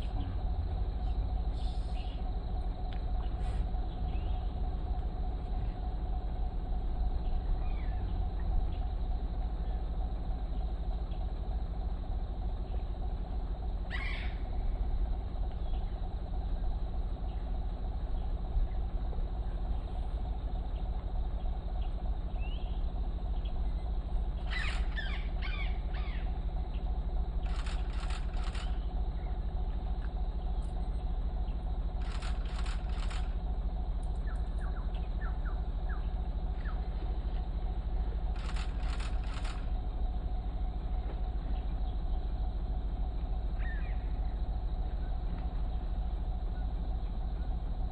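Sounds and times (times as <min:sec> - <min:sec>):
steady low rumble: 0:00.0 - 0:47.9
birds calling: 0:03.1 - 0:04.8, 0:07.2 - 0:09.0, 0:13.8 - 0:14.8, 0:20.7 - 0:33.4, 0:34.0 - 0:39.8, 0:43.4 - 0:47.5.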